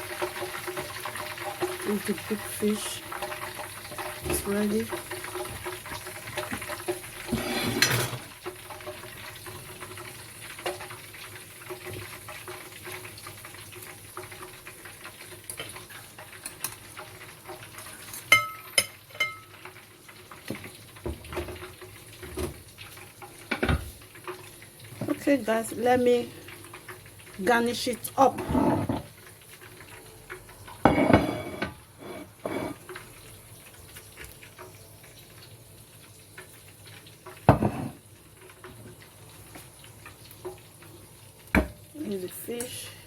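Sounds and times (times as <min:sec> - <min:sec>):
plates and utensils clinking: 0:07.3 - 0:08.3, 0:18.0 - 0:19.6, 0:28.3 - 0:29.1, 0:30.8 - 0:33.0, 0:37.5 - 0:38.0.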